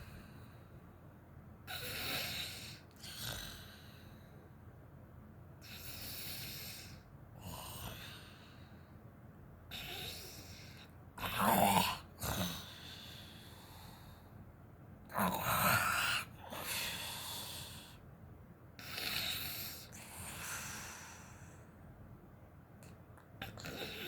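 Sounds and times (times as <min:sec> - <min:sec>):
woman snoring: 0:01.7 - 0:03.9, 0:09.7 - 0:13.1, 0:15.2 - 0:17.9, 0:18.8 - 0:21.3, 0:23.4 - 0:24.0.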